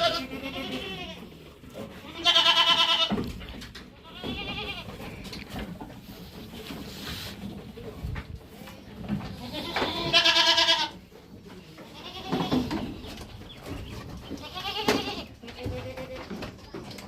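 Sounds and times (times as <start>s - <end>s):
goats bleating: 0.0s - 3.2s, 4.0s - 5.4s, 9.3s - 11.0s, 11.8s - 13.1s, 14.3s - 16.2s.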